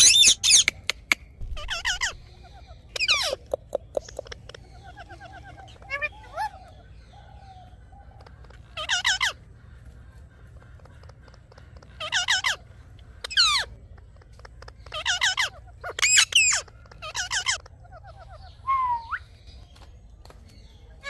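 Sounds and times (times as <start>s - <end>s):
parakeet squawking: 0.0s - 0.7s, 1.4s - 7.0s, 8.2s - 9.6s, 10.4s - 19.1s.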